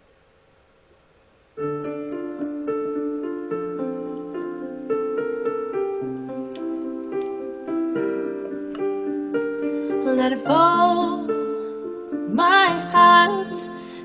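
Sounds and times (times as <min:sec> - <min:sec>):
piano playing repeated chords: 0:01.6 - 0:14.0.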